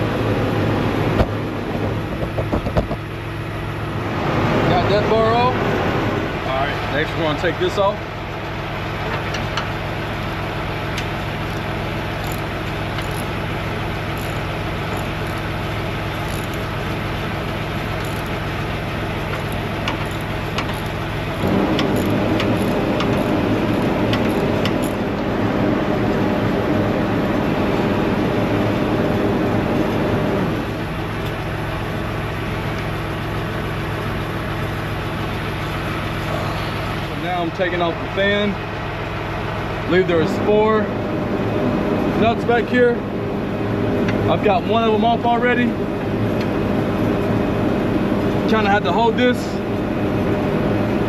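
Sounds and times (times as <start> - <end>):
engine idling: 0.0 - 51.0
fuller engine running: 0.0 - 51.0
metallic tool clicks: 11.5 - 25.1.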